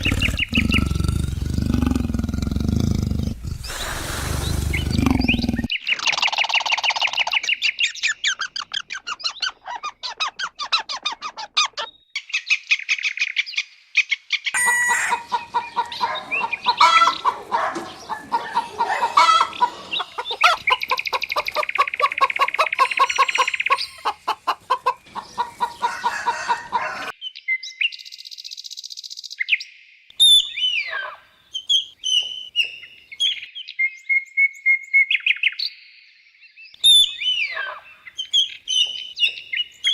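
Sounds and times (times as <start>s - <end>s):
birds chattering and clucking: 0.0s - 11.9s, 14.6s - 27.1s.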